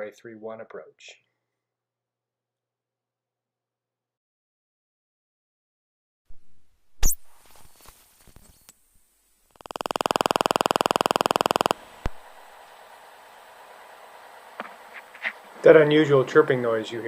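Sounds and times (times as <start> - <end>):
rapid warning chirping: 9.5 - 12.5
sharp click: 9.6 - 12.3.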